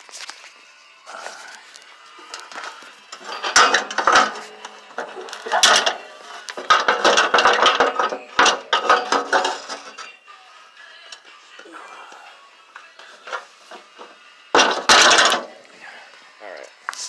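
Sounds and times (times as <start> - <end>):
metal clanking and rattling: 2.3 - 10.1, 14.5 - 15.6.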